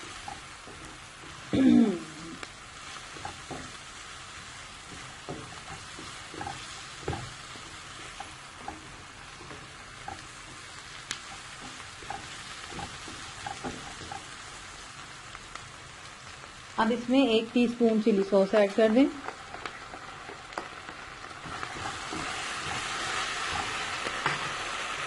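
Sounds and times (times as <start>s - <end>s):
vegetables sizzling in a pan: 0.0s - 25.0s
spoon scraping and tapping pan: 4.8s - 14.4s, 21.4s - 24.7s.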